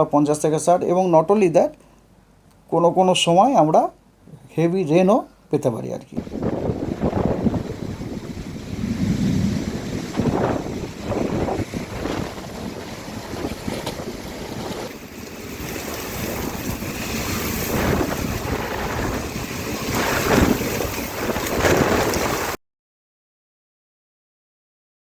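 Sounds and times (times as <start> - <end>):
gusting wind: 6.2 - 22.6
surging water: 6.2 - 22.6.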